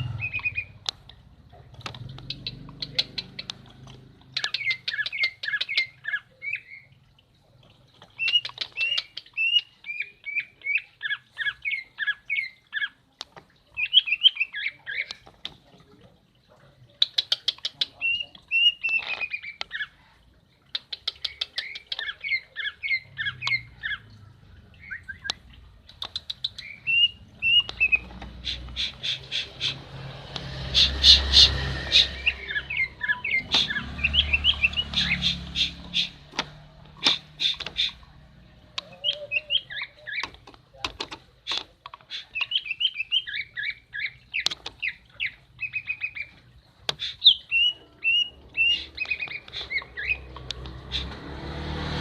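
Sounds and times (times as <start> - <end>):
bird chattering calls: 25.9 - 29.9, 30.6 - 38.2, 46.9 - 51.2.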